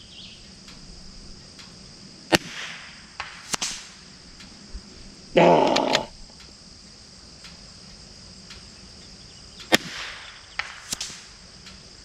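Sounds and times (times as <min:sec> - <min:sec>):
insects buzzing: 0:00.0 - 0:12.0
quiet clicks: 0:00.4 - 0:02.4, 0:03.2 - 0:12.0
rifle shot: 0:02.3 - 0:04.1, 0:09.7 - 0:11.4.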